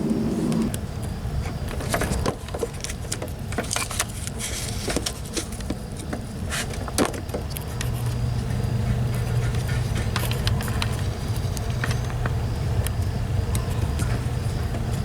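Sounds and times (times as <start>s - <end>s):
low outdoor rumble: 0.0s - 0.8s
steady low hum: 0.0s - 1.0s.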